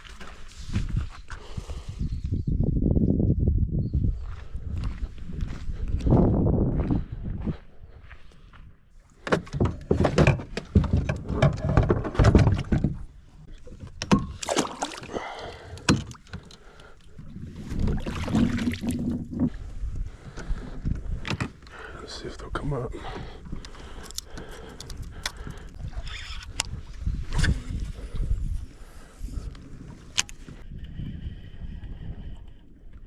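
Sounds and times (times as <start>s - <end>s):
knocks clunks and rattles: 9.2s - 14.5s.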